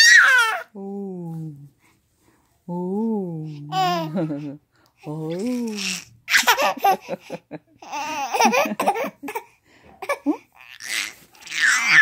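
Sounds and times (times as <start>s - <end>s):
baby giggling: 3.7s - 4.6s, 5.8s - 12.0s.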